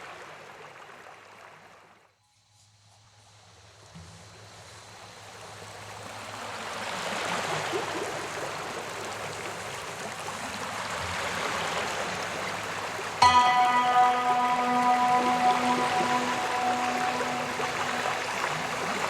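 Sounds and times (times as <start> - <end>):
music with sustained tones: 13.2 - 19.0.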